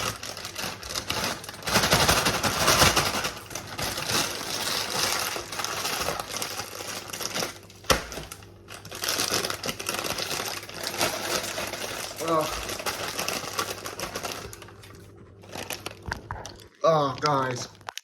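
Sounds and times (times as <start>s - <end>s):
snack packet crinkling: 0.0s - 18.0s.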